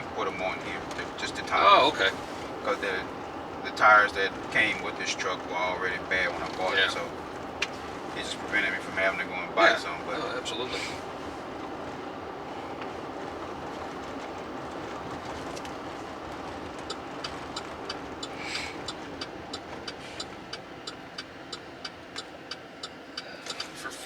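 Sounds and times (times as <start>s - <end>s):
road and engine noise in car: 0.0s - 24.0s
turn signal clicking: 15.6s - 23.8s.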